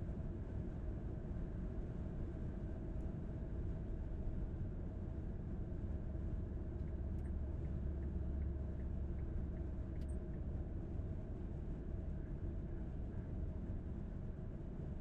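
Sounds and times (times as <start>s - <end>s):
faint light ticks: 6.7s - 10.6s.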